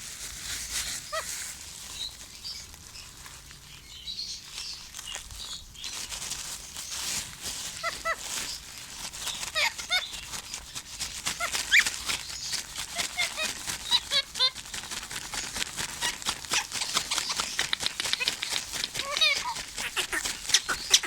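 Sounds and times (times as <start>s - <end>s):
parrot chirping: 1.1s - 1.3s, 7.8s - 8.2s, 9.2s - 10.3s, 11.3s - 14.6s, 15.3s - 21.0s
parrot clicks: 16.0s - 21.0s.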